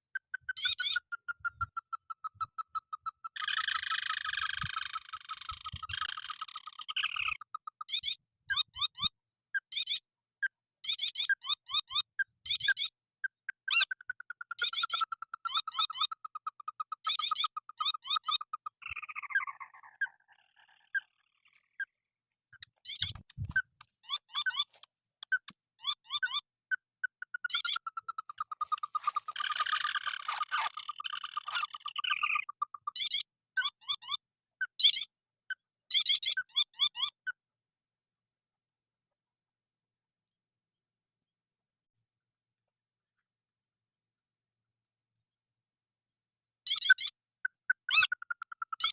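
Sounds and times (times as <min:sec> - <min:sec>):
bird trill: 0:00.0 - 0:21.9, 0:22.5 - 0:37.4, 0:46.6 - 0:48.9
birds calling in clucking series: 0:00.0 - 0:35.1, 0:46.7 - 0:48.9.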